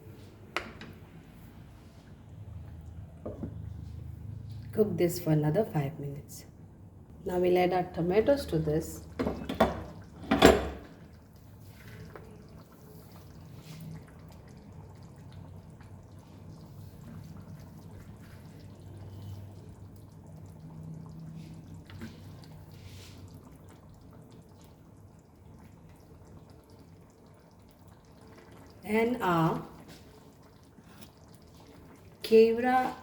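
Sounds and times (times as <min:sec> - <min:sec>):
curry bubbling: 0:01.1 - 0:04.7, 0:07.1 - 0:33.0
stirring in a pan: 0:10.8 - 0:33.0.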